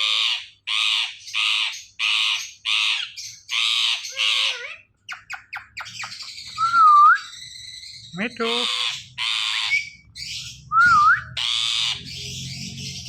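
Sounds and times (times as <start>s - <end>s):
parrot chirping: 0.0s - 13.0s
parrot screeching: 0.0s - 13.0s.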